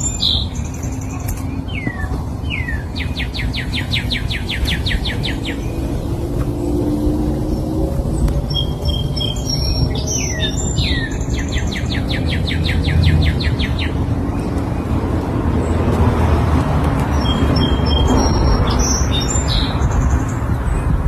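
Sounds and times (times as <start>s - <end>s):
songbird singing: 0.0s - 21.0s
steady low rumble: 0.0s - 21.0s.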